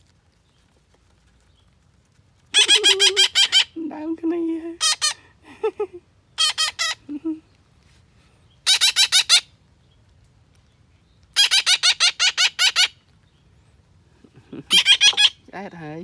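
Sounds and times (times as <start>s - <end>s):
parrot high calls: 2.5s - 3.8s, 4.8s - 5.3s, 6.4s - 7.1s, 8.6s - 9.5s, 11.4s - 13.0s, 14.6s - 15.5s.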